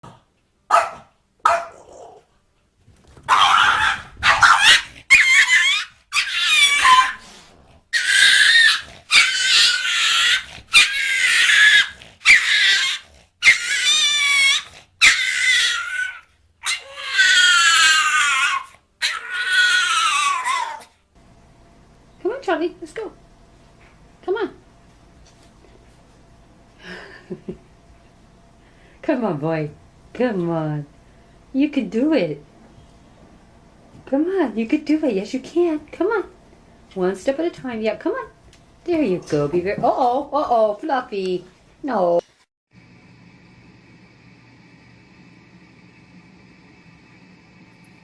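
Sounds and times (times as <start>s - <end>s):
cat yowling: 3.3s - 7.2s, 8.0s - 20.9s.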